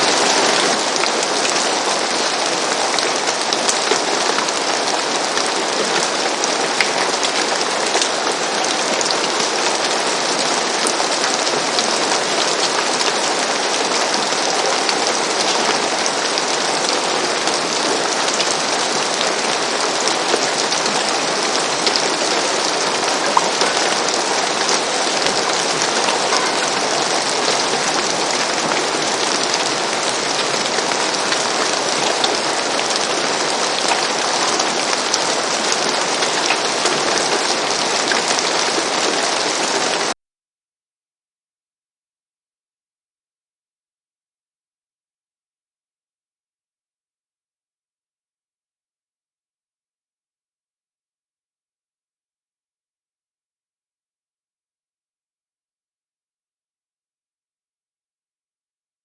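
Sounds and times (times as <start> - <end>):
rain on a roof: 0.0 - 40.2.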